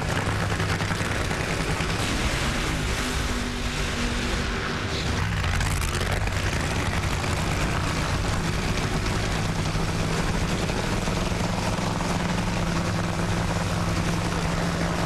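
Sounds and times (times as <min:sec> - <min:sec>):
race car engines idling: 0:00.0 - 0:15.0.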